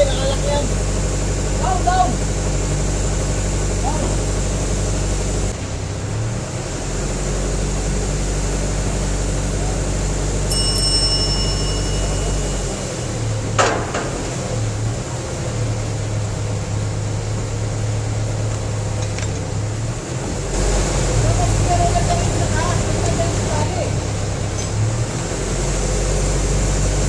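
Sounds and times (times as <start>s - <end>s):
vehicle engine idling: 0.0s - 27.0s
short high tone: 10.5s - 13.5s.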